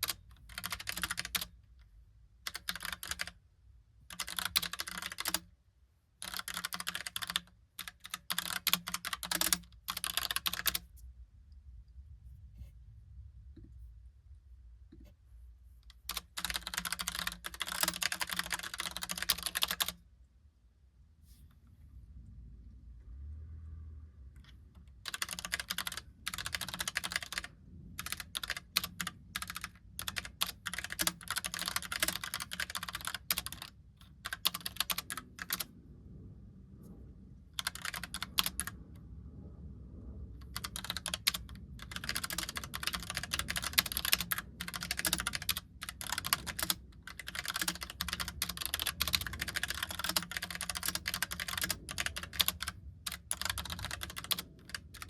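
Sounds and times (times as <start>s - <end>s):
fast typing on mechanical keyboard: 0.0s - 1.6s, 2.4s - 3.4s, 4.1s - 5.5s, 6.2s - 10.8s, 16.1s - 20.0s, 24.8s - 35.7s, 37.6s - 38.8s, 40.4s - 55.0s.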